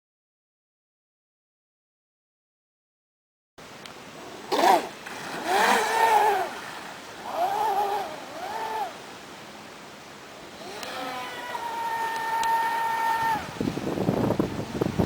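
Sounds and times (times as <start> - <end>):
electric motor whining: 5.4 - 6.5, 7.2 - 9.0.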